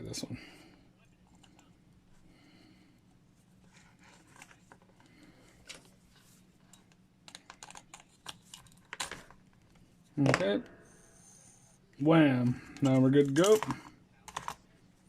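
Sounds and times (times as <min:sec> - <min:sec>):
plastic parts clicking: 0:12.8 - 0:14.6.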